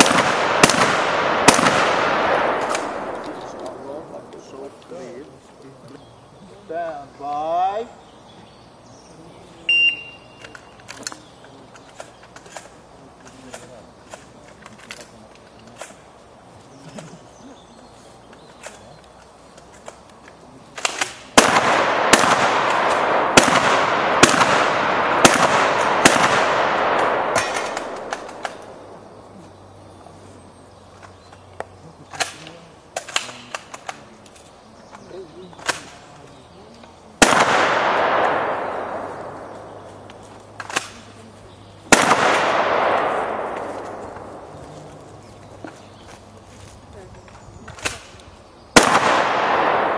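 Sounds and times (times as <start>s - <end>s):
shotgun shots with echo: 0.0s - 4.6s, 20.8s - 29.0s, 37.2s - 41.1s, 41.9s - 44.6s, 48.8s - 49.9s.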